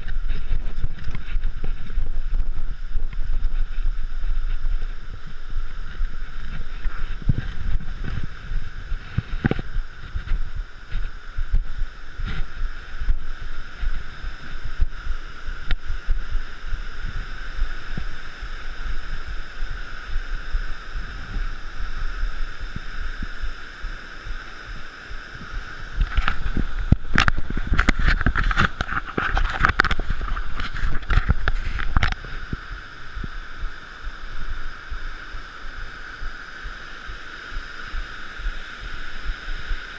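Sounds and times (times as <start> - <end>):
wind rumbling on microphone: 0.0 - 39.9.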